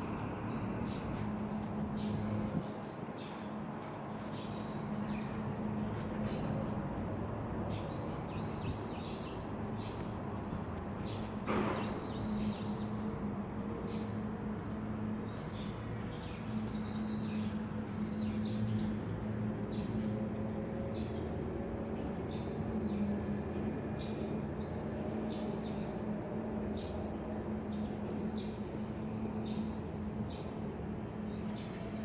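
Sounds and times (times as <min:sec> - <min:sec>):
small birds chirping: 0:00.0 - 0:21.3, 0:27.7 - 0:32.0.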